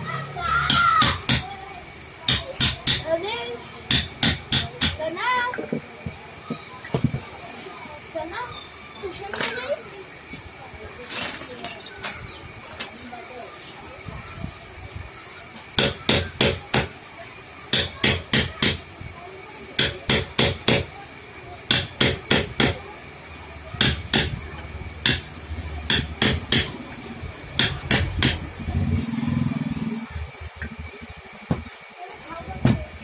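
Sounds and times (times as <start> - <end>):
hammer striking: 0.7 - 1.6, 2.3 - 3.1, 3.9 - 5.0, 15.8 - 17.0, 17.7 - 18.8, 19.8 - 20.9, 21.7 - 22.8, 23.8 - 24.4, 25.0 - 26.8, 27.6 - 28.5.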